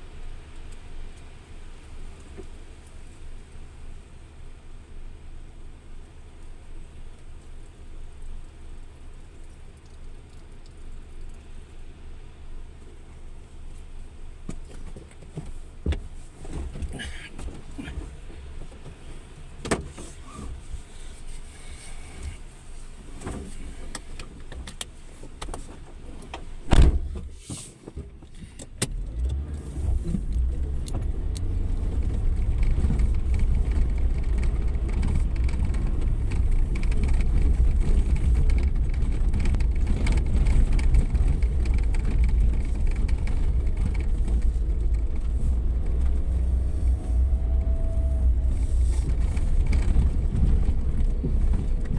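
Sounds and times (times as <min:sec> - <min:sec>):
vehicle engine rumble: 0:00.0 - 0:51.9
loud thump: 0:26.6 - 0:27.3.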